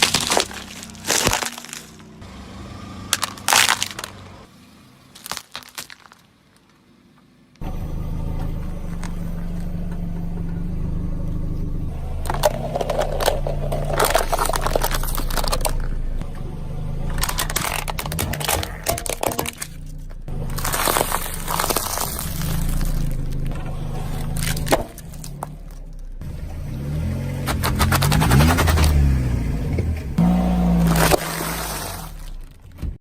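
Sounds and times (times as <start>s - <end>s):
brittle material crunching: 0.0s - 2.1s, 3.1s - 4.2s, 5.2s - 6.7s, 12.2s - 15.9s, 17.2s - 19.8s, 20.5s - 23.5s, 24.2s - 25.8s.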